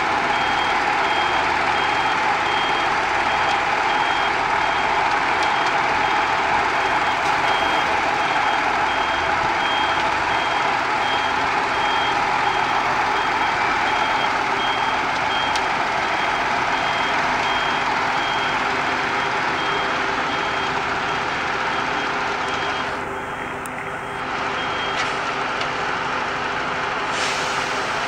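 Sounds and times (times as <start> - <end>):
truck engine running: 0.0 - 28.0
truck reversing alarm beeping: 0.0 - 28.0.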